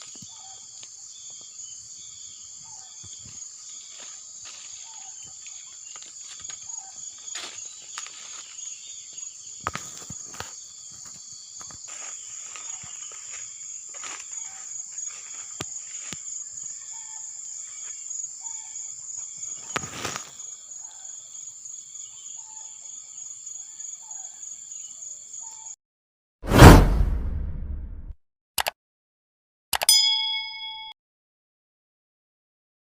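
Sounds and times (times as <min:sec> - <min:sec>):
insects droning: 0:00.0 - 0:25.5
insect chirps: 0:00.0 - 0:25.6.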